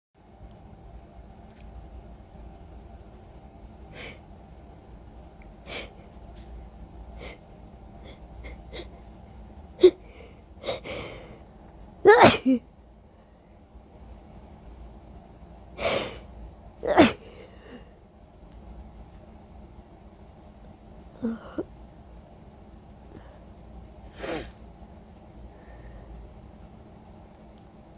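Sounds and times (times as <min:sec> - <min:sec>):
loud sneezes: 0:12.1 - 0:12.6, 0:16.8 - 0:17.3
faint sniffles: 0:15.8 - 0:17.9, 0:24.1 - 0:24.6.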